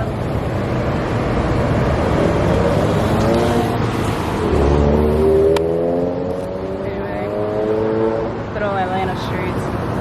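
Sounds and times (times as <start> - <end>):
passing cars rumble: 0.0 - 10.0
engine note rising and falling: 2.0 - 8.3.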